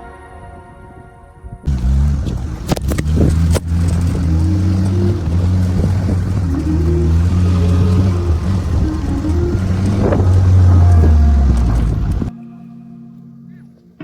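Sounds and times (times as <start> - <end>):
vehicle engine running under load: 1.7 - 12.3.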